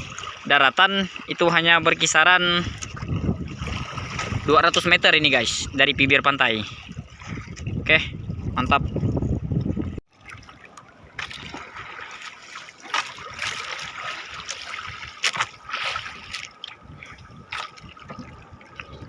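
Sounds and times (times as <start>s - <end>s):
water trickling and splashing: 0.0s - 19.0s
sharp splashes: 2.6s - 4.9s, 10.1s - 19.0s.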